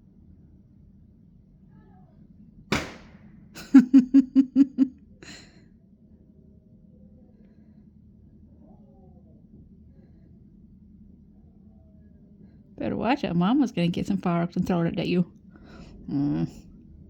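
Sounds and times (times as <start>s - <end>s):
firework bang: 2.7s - 3.3s
woman laughing: 3.6s - 5.5s, 16.1s - 16.6s.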